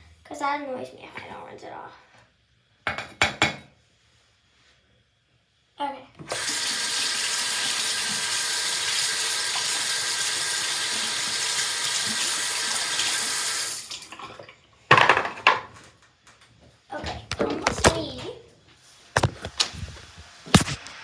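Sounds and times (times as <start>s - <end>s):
water running from a sink tap: 6.3s - 14.2s
sharp knock: 20.6s - 20.8s.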